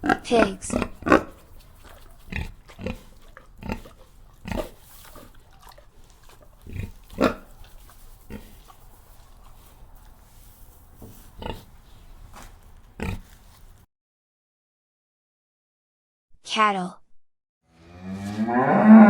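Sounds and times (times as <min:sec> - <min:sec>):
pig grunting: 0:00.0 - 0:12.1, 0:12.8 - 0:13.5.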